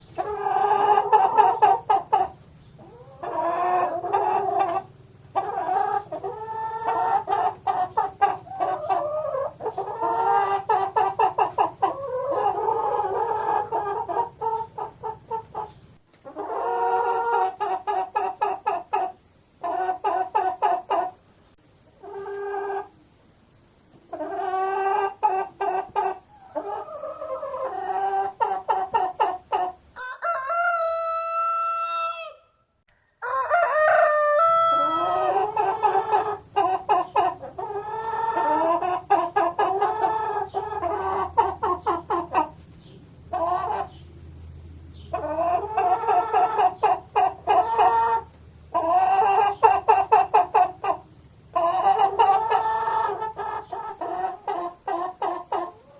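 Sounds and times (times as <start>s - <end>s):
chickens squawking: 0.0s - 21.2s, 24.0s - 32.6s, 33.2s - 44.2s, 44.9s - 55.9s
chickens clucking: 0.0s - 23.2s, 23.8s - 55.9s
rooster crowing: 30.0s - 35.6s.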